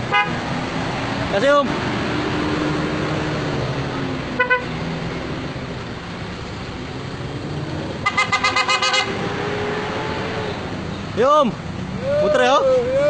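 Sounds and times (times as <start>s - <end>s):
car horns tooting: 0.0s - 0.5s, 4.3s - 4.8s, 8.0s - 9.3s
traffic engine and road noise: 0.0s - 13.0s.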